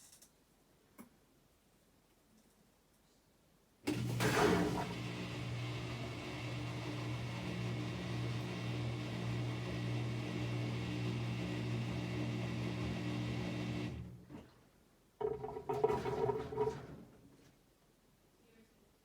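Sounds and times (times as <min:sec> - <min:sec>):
washing machine motor humming: 0:03.9 - 0:14.5, 0:15.2 - 0:17.2.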